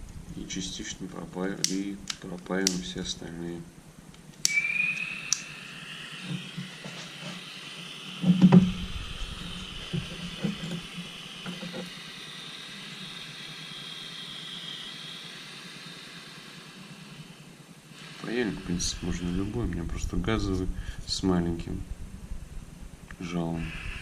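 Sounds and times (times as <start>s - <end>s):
gas soldering iron hissing: 1.5s - 3.4s, 4.4s - 21.1s, 23.1s - 24.0s
soldering iron switch click: 1.6s - 2.8s, 4.4s - 5.5s.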